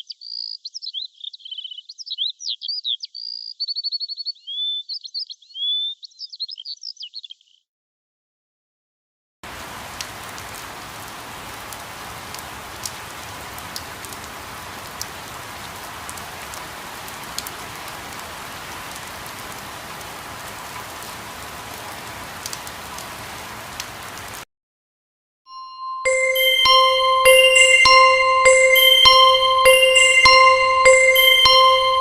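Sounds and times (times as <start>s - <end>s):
raindrop impacts: 9.4s - 24.4s, 26.1s - 32.0s
steady rain: 9.4s - 24.5s, 26.1s - 32.0s.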